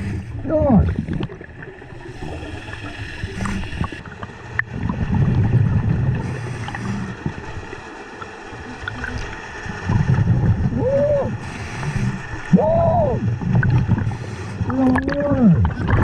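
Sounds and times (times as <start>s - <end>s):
exhaled air bubbling underwater: 0.0s - 16.0s
regulator inhale hiss: 2.0s - 4.0s, 6.2s - 7.7s, 11.4s - 12.5s, 14.0s - 14.7s.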